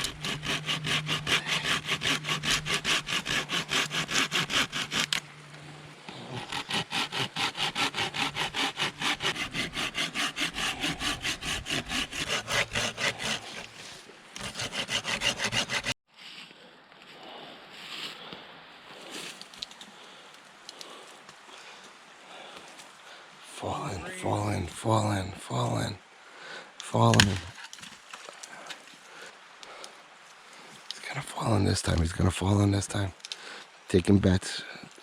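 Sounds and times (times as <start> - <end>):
hand saw cutting wood: 0.0 - 5.3, 6.1 - 16.0
soft steady hiss: 17.6 - 35.0.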